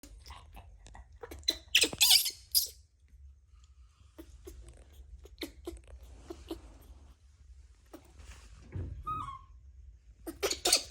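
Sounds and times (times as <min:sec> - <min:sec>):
baby monkey squeaking and crying: 0:01.2 - 0:02.8, 0:09.0 - 0:09.6, 0:10.2 - 0:10.9.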